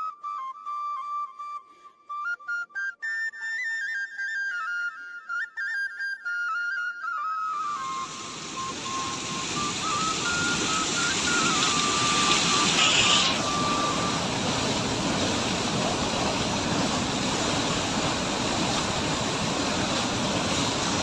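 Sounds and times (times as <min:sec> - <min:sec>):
waterfall roaring: 0:07.7 - 0:21.0.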